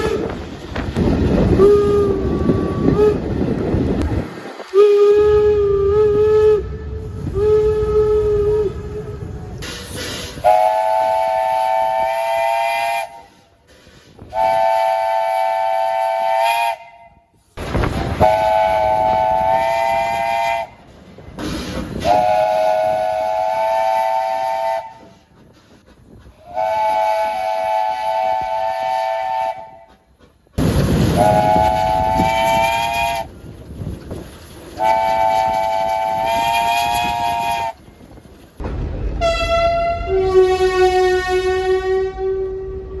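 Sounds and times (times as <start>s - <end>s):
single-tone train horn: 0.0s - 0.4s, 1.5s - 3.5s, 4.7s - 9.6s, 10.4s - 13.4s, 14.3s - 17.4s, 18.2s - 20.8s, 22.0s - 25.2s, 26.4s - 30.0s, 31.2s - 33.3s, 34.8s - 37.8s, 39.2s - 43.0s
running train rumble: 0.0s - 43.0s.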